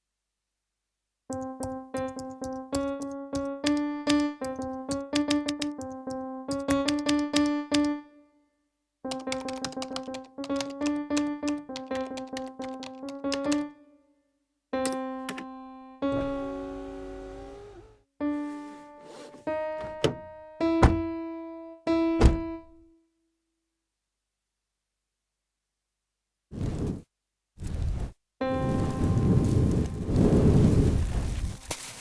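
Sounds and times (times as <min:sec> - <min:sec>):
bright piano-like notes: 0:18.2 - 0:22.9.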